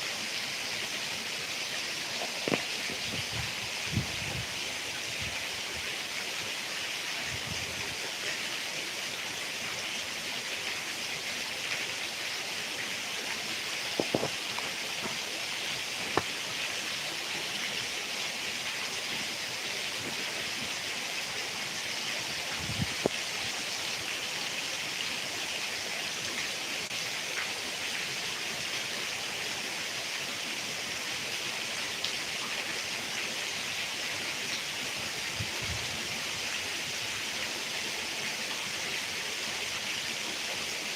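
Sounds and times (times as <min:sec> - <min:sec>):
heavy rain falling: 0:00.0 - 0:08.3, 0:09.0 - 0:30.4.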